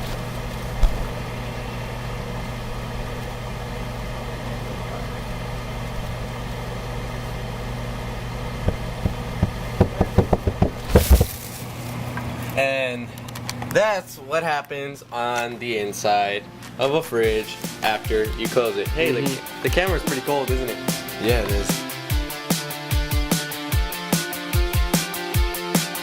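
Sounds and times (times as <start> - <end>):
refrigerator humming: 0.0 - 20.0
knocks and clatter: 8.6 - 11.4.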